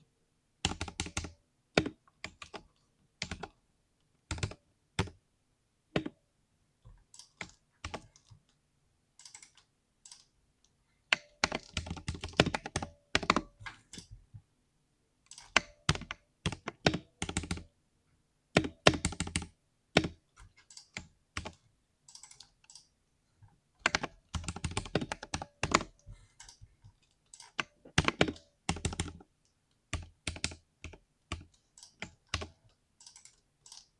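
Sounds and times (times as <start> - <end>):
mechanical keyboard typing: 0.6 - 2.6, 3.2 - 3.5, 4.3 - 5.2, 9.2 - 10.3, 11.1 - 14.2, 15.3 - 17.6, 18.6 - 22.9, 23.8 - 26.6, 27.3 - 29.3, 29.9 - 33.9.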